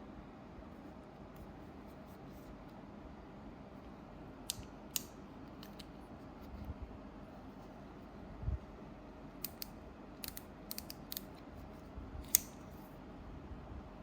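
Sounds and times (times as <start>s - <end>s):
sharp small clicks: 9.4s - 11.4s, 12.2s - 12.6s.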